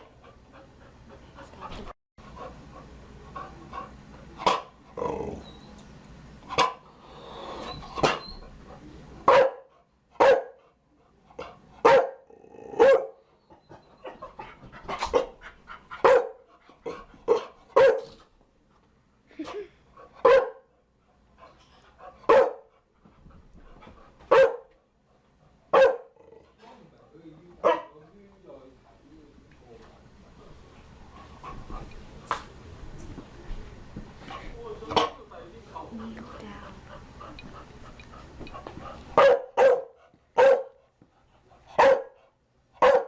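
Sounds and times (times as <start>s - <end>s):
dog barking: 9.3s - 10.6s, 11.8s - 12.2s, 12.8s - 13.2s, 16.0s - 16.4s, 17.3s - 18.2s, 20.2s - 20.7s, 22.3s - 22.7s, 24.3s - 24.7s, 25.7s - 26.2s, 27.6s - 28.0s, 39.2s - 40.8s, 41.8s - 42.2s, 42.8s - 43.0s.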